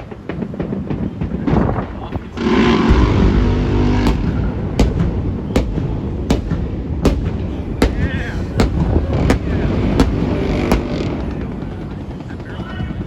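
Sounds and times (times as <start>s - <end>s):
loud rushing rumble: 1.4s - 13.0s
gunshots: 2.4s - 11.5s.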